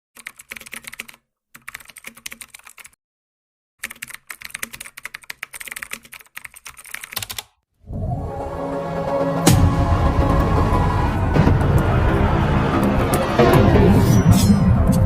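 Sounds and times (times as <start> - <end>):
rapid keyboard typing: 0.2 - 3.0, 3.8 - 7.6.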